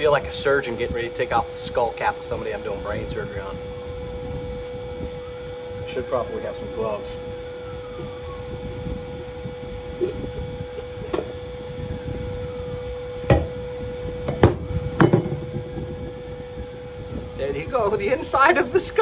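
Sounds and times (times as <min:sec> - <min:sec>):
steady background hum: 0:00.0 - 0:19.0
metal knocks and clanks: 0:10.0 - 0:11.4, 0:13.3 - 0:13.6, 0:14.3 - 0:16.0.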